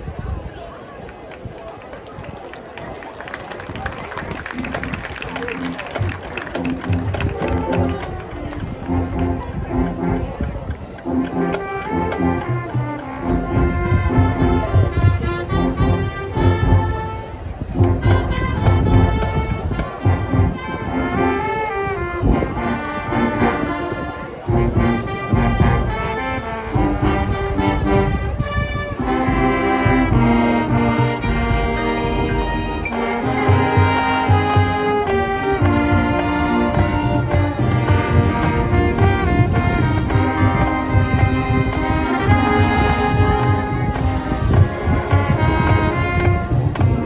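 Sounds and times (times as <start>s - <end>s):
brass instruments playing: 4.1s - 47.0s
pounding drums: 29.0s - 47.0s.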